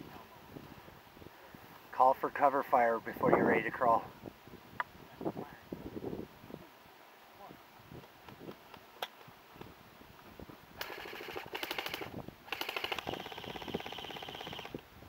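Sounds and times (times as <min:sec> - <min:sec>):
airsoft guns full-auto bursts: 0:10.8 - 0:14.8.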